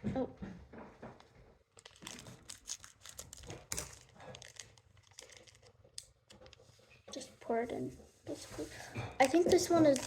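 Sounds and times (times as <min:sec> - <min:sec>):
plastic packet crinkling: 0:01.7 - 0:06.7.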